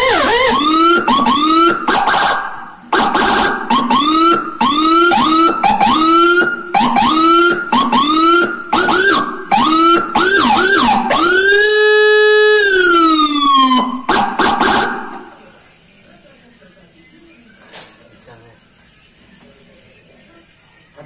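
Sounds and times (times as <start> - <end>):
electronic siren whooping and wailing: 0.0 - 15.6
harsh buzzing siren tone: 0.0 - 15.6.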